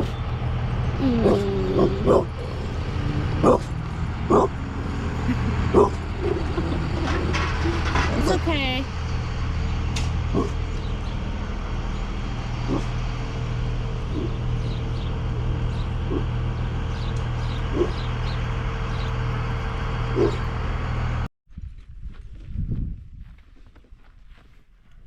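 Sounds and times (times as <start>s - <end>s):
vehicle engine and road noise: 0.0s - 21.3s
dog whining: 1.0s - 2.7s.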